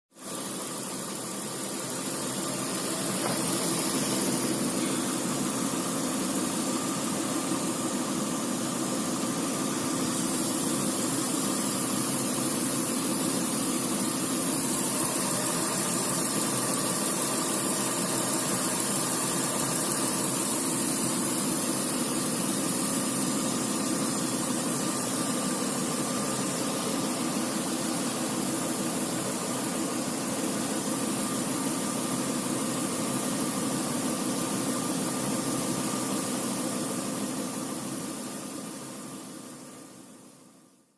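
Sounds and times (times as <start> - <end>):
radiator cooling fan running: 0.2 - 40.6
car engine idling: 0.8 - 11.5.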